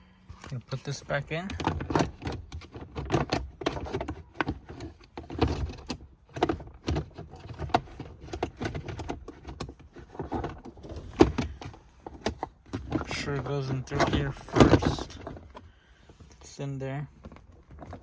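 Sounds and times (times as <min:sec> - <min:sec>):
plastic trim rustling: 0:00.3 - 0:16.4
plastic clicks and knocks: 0:01.4 - 0:16.3.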